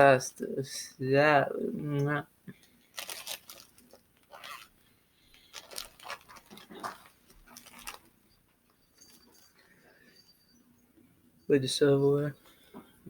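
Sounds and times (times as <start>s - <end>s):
plastic bag rustling: 2.8s - 8.2s.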